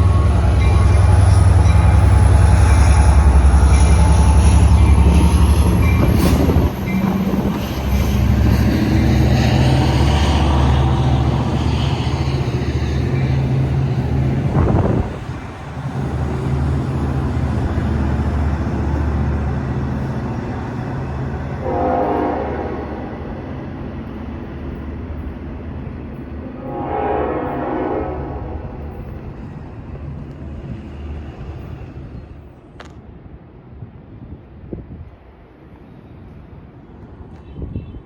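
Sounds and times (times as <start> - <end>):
train rumbling through station: 0.0 - 38.0.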